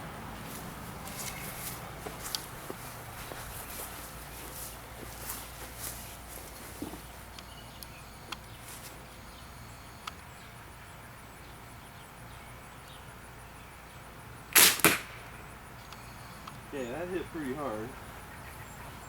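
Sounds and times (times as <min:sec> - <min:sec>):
slingshot firing sharp cracks: 0:14.5 - 0:15.4.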